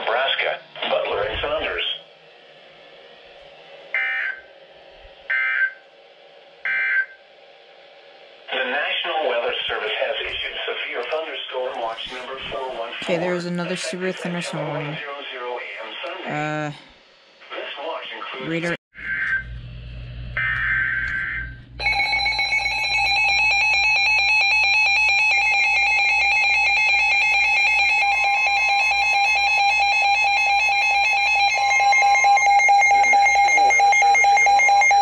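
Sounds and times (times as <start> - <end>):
low electrical hum: 0.0 - 35.0
screechy digital data burst: 3.9 - 4.5
two-tone alert signal: 31.4 - 35.0.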